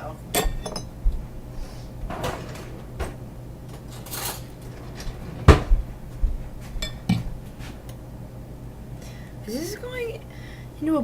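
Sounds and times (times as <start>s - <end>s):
dishes and cookware clinking: 0.3s - 1.0s, 3.8s - 5.7s, 6.8s - 7.3s
loud knock: 5.4s - 7.4s.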